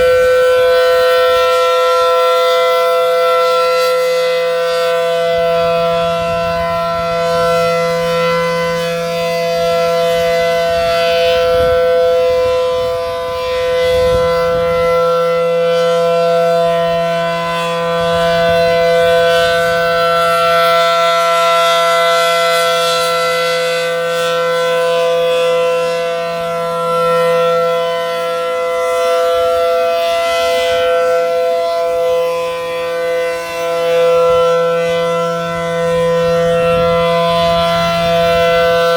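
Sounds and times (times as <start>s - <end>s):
siren steady wail: 0.0s - 38.9s.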